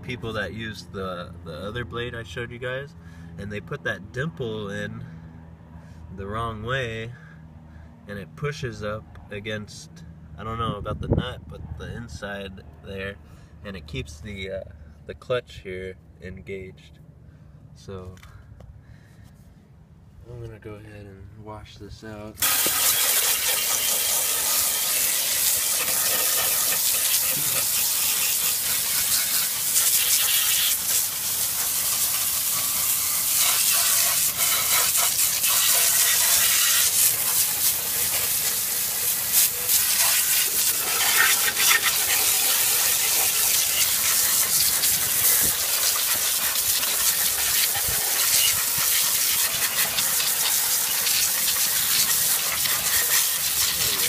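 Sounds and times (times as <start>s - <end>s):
water spray hitting metal: 22.4s - 54.0s.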